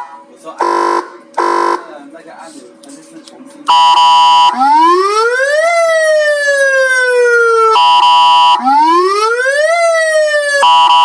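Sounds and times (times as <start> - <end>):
harsh horn blast: 0.0 - 2.0
electronic siren rising and falling: 3.7 - 11.0.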